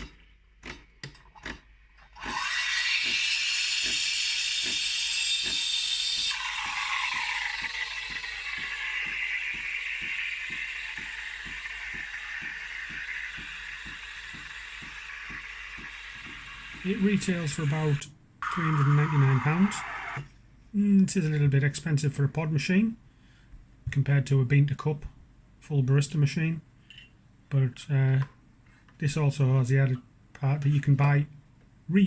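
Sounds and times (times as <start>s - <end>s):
pump knocking in pulses: 2.2s - 17.7s
steam wand hissing: 2.2s - 18.0s.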